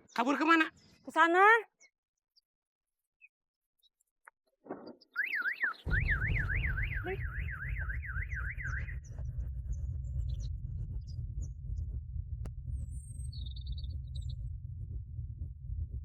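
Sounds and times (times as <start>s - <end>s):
electronic siren warbling: 5.2s - 9.1s
steady low rumble: 5.9s - 16.0s.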